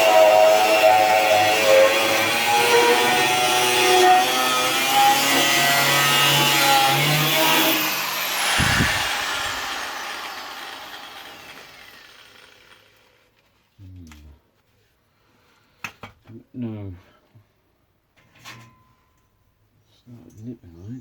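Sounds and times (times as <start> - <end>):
angle grinder on metal: 0.0 - 13.1.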